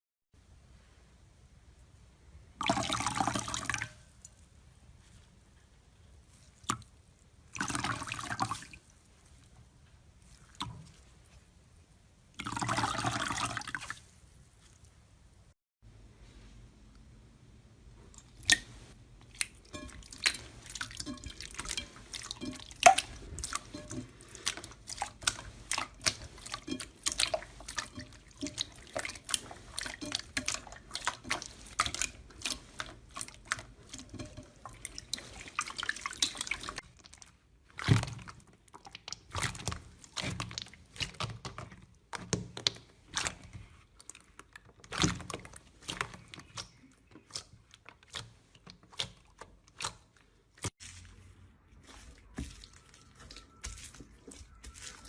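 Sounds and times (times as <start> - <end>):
slime squelching thuds: 37.7 - 43.8.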